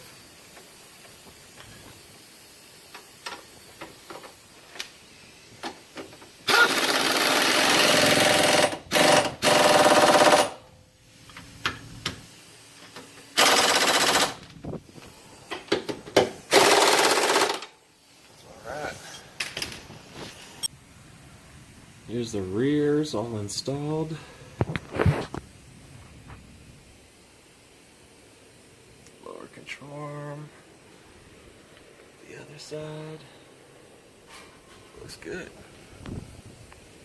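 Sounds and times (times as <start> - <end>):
impact wrench hammering: 6.0 - 10.6, 13.4 - 14.4, 15.5 - 17.7.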